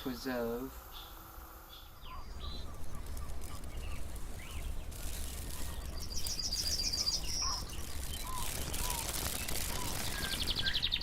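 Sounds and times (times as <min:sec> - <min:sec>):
wild birds chirping and trilling: 0:00.0 - 0:11.0
steady low rumble: 0:00.8 - 0:11.0.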